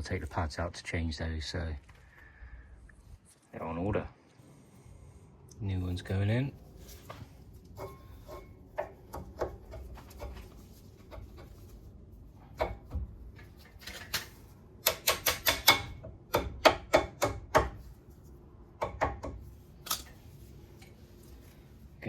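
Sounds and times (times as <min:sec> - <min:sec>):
brake parts clicking and knocking: 0:12.5 - 0:17.8.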